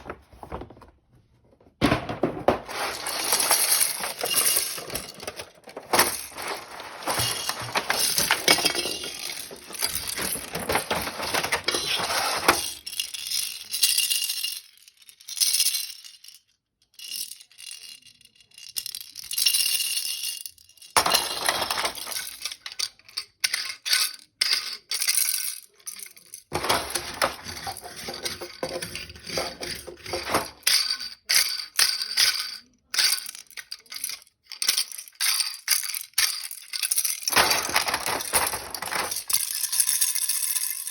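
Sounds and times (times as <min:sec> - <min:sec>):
hard plastic clicking and clinking: 0:01.8 - 0:12.8, 0:26.3 - 0:32.4, 0:35.8 - 0:39.7.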